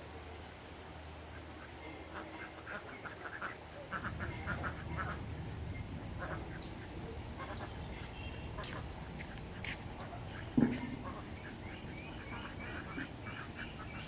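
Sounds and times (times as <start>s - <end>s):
steady low rumble: 4.0s - 14.0s.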